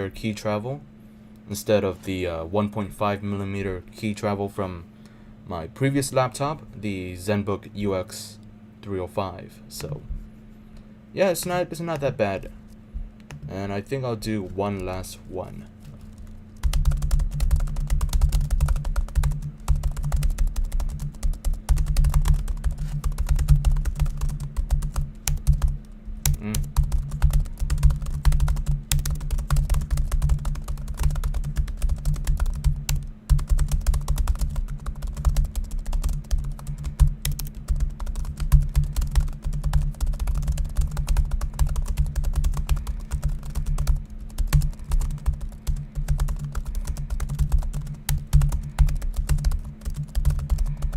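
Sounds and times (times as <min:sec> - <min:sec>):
fast laptop keyboard typing: 0:14.2 - 0:15.0, 0:15.8 - 0:50.9.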